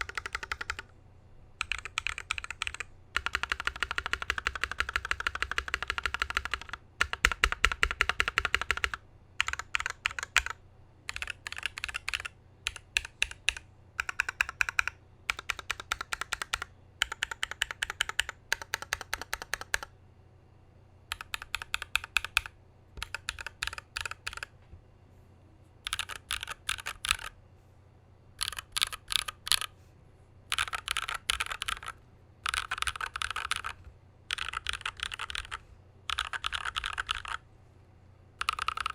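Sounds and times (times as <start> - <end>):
mechanical keyboard typing: 0.0 - 0.9, 1.6 - 19.9, 21.1 - 24.5, 25.8 - 27.4, 28.4 - 29.7, 30.5 - 37.4, 38.4 - 38.9.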